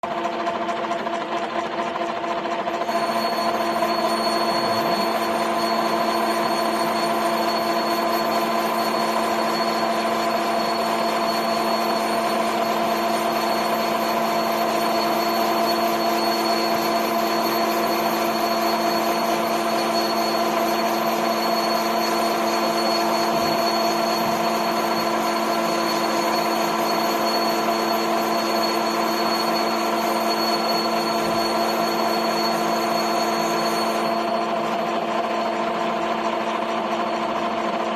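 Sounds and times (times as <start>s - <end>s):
lathe motor whine: 0.1s - 37.9s.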